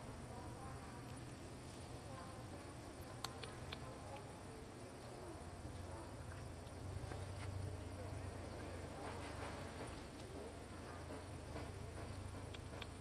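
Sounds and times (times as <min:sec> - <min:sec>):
low steady hum: 0:00.0 - 0:13.0
faint short clicks: 0:03.2 - 0:04.3.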